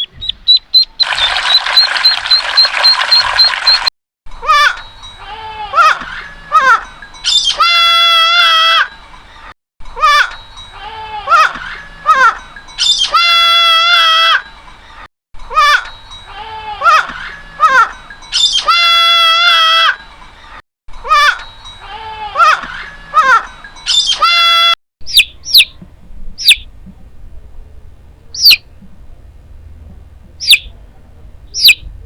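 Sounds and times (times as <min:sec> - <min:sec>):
young goats bleating: 0:04.4 - 0:08.9, 0:10.0 - 0:14.4, 0:15.5 - 0:19.9, 0:21.1 - 0:23.5.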